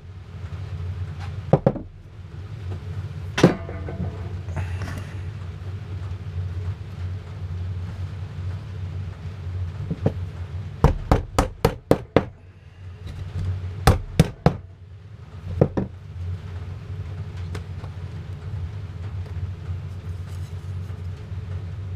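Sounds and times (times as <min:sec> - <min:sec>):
steady low hum: 0:00.0 - 0:21.9
hammer tapping nails into wood: 0:10.8 - 0:12.4.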